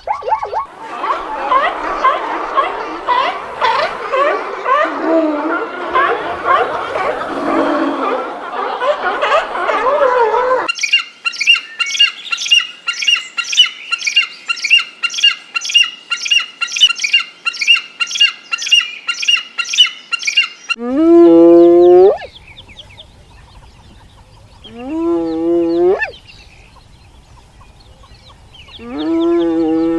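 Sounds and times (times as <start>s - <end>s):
bird squawking: 0.0s - 0.7s, 21.8s - 29.9s
long farm animal calls: 0.0s - 10.7s, 20.7s - 29.9s.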